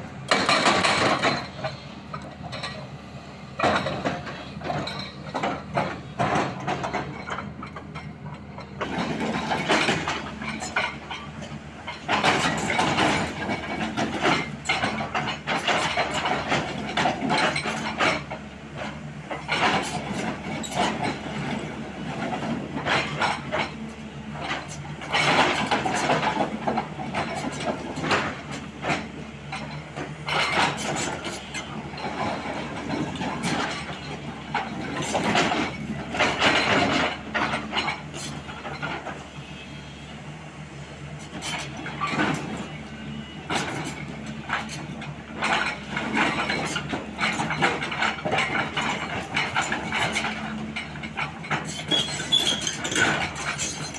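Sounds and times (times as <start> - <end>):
excavator diesel engine: 0.0 - 53.9.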